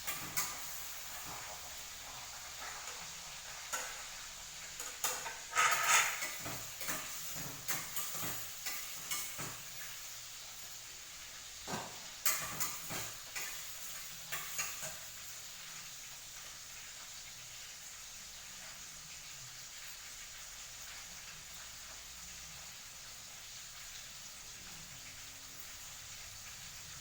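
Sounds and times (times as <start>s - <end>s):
utensil scraping in a pan: 0.0s - 10.2s, 11.7s - 15.4s
food sizzling: 0.0s - 27.0s.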